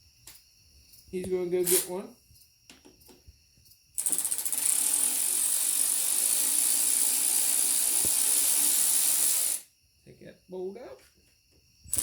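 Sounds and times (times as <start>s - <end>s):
ratchet wrench clicking fast: 4.0s - 9.6s.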